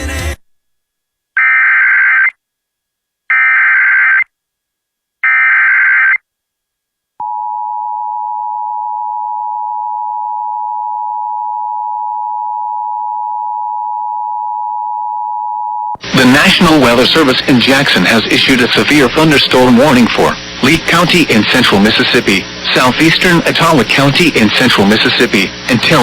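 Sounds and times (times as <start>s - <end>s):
steady attention-signal tone: 1.4s - 2.3s, 3.3s - 4.2s, 7.2s - 26.0s.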